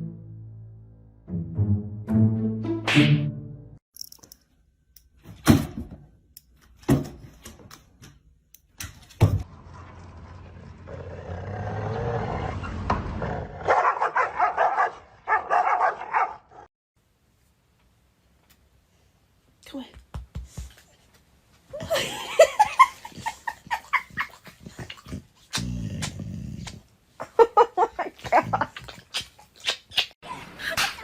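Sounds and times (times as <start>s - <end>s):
dog barking: 13.6s - 16.7s.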